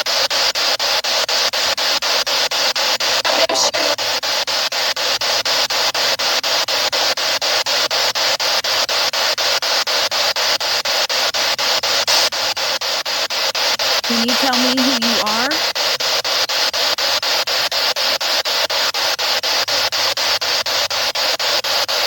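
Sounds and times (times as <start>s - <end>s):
radio static pulsing: 2.8s - 4.4s, 13.8s - 16.0s.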